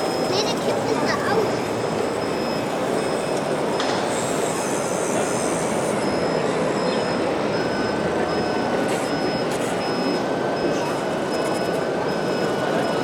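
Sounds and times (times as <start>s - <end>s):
electric motors and hydraulic pumps: 0.0s - 13.0s
thin steady whine: 0.0s - 13.0s
faint high-pitched beep: 6.0s - 13.0s.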